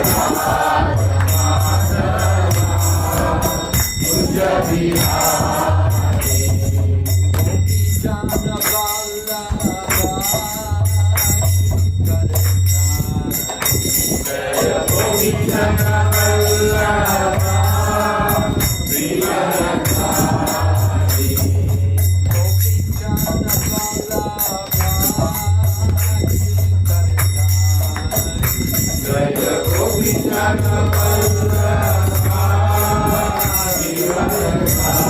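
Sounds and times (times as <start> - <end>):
hand cymbals jingling: 0.0 - 35.0
voices singing together: 0.0 - 35.0.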